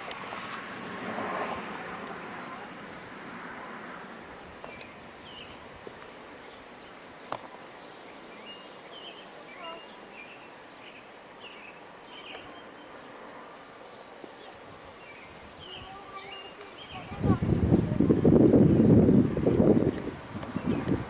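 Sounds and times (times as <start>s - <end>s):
steady outdoor hiss: 0.0s - 21.0s
small birds chirping: 4.3s - 21.0s.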